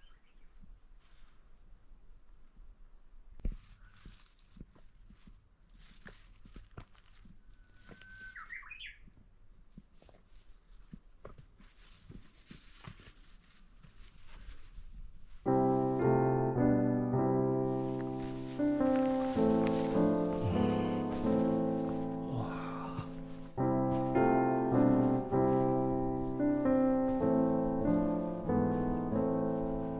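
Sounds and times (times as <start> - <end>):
bird call rising in pitch: 7.6 - 9.0
piano music: 15.5 - 29.9.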